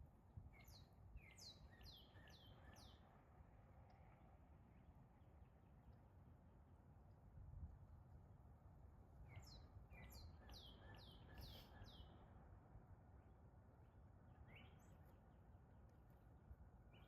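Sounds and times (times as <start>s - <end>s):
low rumble of wind: 0.0s - 17.0s
songbird singing: 0.5s - 3.3s, 9.2s - 12.3s, 14.4s - 15.1s.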